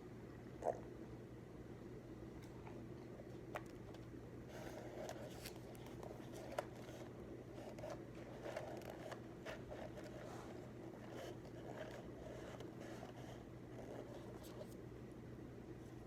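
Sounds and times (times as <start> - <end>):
low room hum: 0.0 - 16.0
pen scratching on paper: 6.3 - 14.7.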